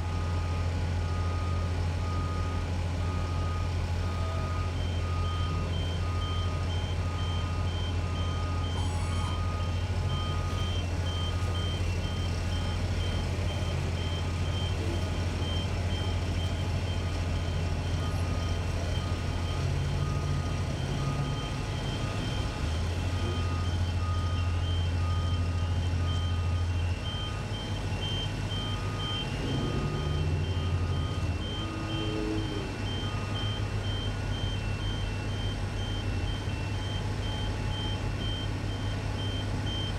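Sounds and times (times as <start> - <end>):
construction engine drone: 0.0 - 39.9
backup alarms beeping: 0.1 - 39.9.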